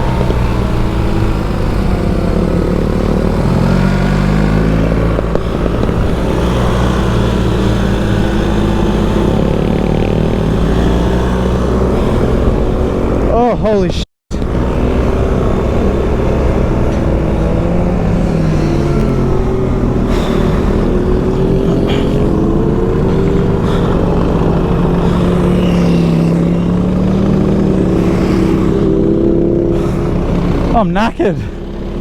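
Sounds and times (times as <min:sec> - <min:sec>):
wind noise: 0:00.0 - 0:26.8
motorcycle engine running: 0:00.0 - 0:32.0.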